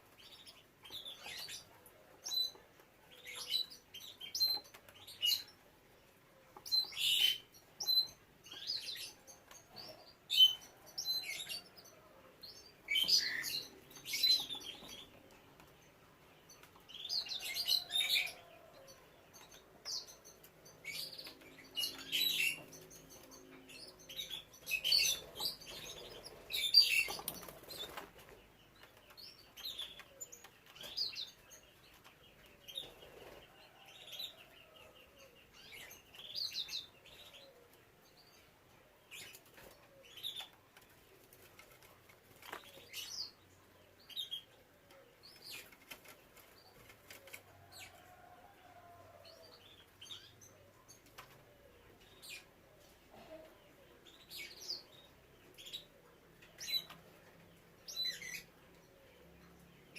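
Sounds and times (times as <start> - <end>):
canaries chirping: 0.0 - 59.9
wings fluttering: 25.0 - 28.4.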